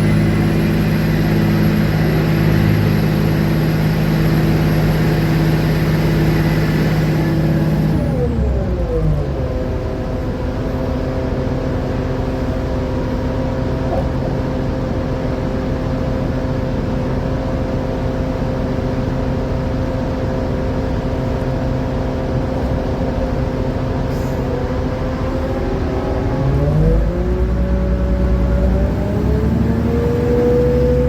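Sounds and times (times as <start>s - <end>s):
train engine droning: 0.0s - 31.0s.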